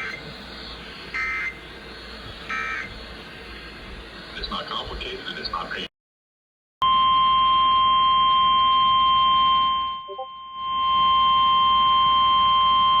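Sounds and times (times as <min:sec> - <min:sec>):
electronic alert tone: 0:09.9 - 0:10.7.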